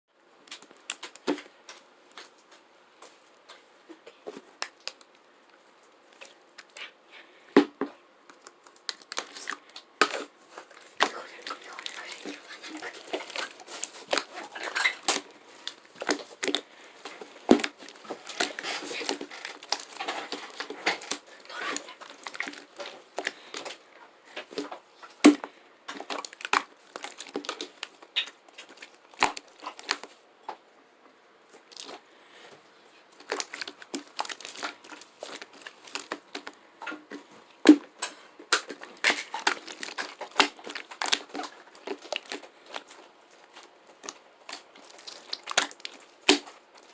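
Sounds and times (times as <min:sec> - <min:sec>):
thin material crinkling and rustling: 0:08.3 - 0:25.3, 0:25.9 - 0:30.2, 0:31.5 - 0:32.4, 0:33.0 - 0:46.9.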